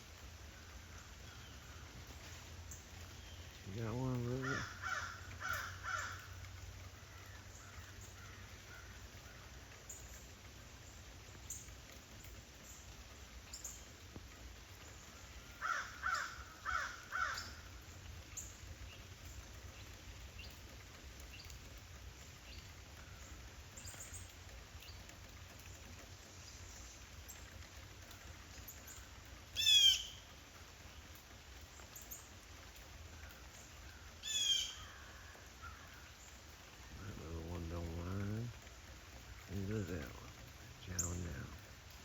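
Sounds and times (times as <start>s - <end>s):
rain hissing: 0.0s - 42.0s
crows cawing: 4.2s - 9.6s, 15.5s - 17.8s, 33.9s - 36.2s.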